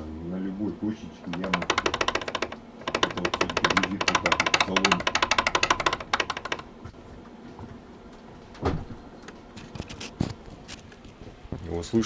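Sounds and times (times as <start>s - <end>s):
steering rack knocking: 1.2s - 7.0s.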